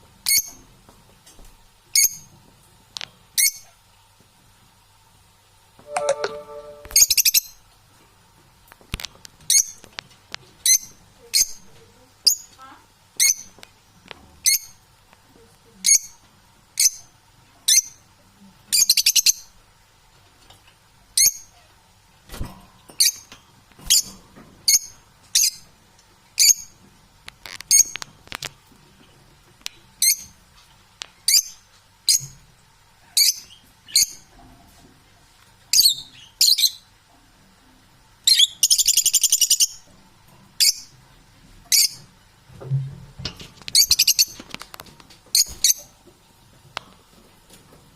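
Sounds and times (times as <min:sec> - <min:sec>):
parrot chirping: 0:05.9 - 0:07.5, 0:38.3 - 0:39.8, 0:43.8 - 0:44.4.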